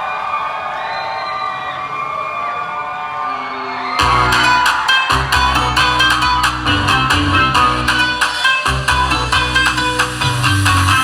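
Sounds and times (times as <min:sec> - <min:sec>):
pop backing track with heavy bass: 0:04.0 - 0:11.0.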